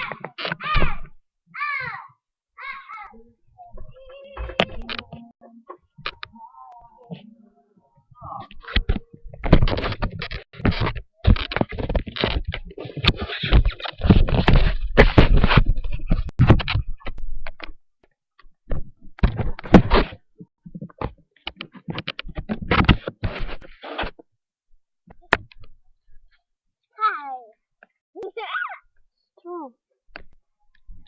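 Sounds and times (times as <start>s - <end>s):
thumps close to microphone: 3.7s - 6.3s, 8.2s - 17.8s, 18.7s - 24.2s
scraping close to microphone: 8.2s - 17.6s, 18.7s - 24.2s.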